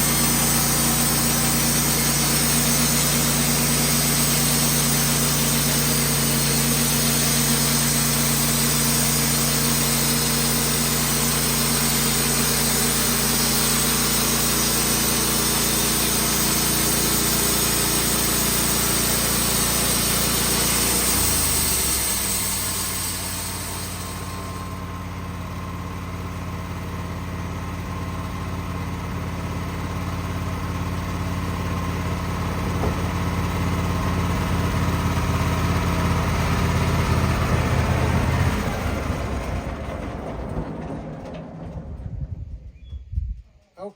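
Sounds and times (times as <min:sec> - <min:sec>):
band saw blade cutting log: 0:00.0 - 0:24.8
sawmill engine running: 0:00.0 - 0:42.7.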